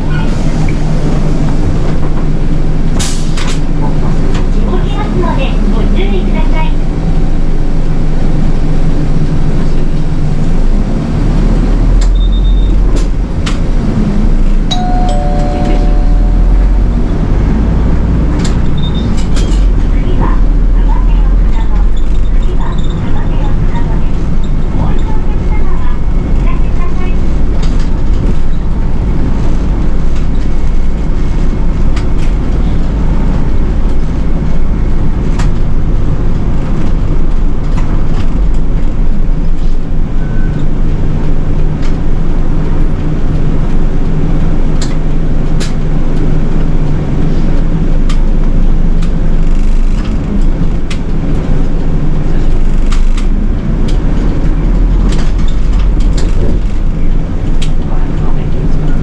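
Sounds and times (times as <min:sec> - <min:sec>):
bus engine and road rumble: 0:00.0 - 0:59.0
rattles and clicks: 0:47.3 - 0:58.9.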